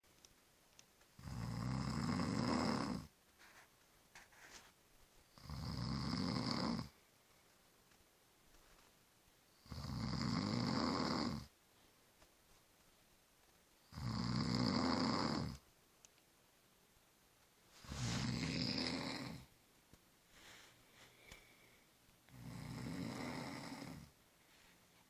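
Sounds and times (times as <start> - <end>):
person snoring: 1.2 - 3.1, 5.4 - 6.9, 9.6 - 11.5, 13.9 - 15.6, 17.8 - 19.5, 22.3 - 24.1.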